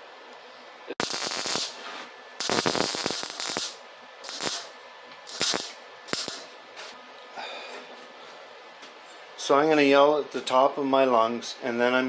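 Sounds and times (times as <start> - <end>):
welding arc crackle: 1.0 - 7.0.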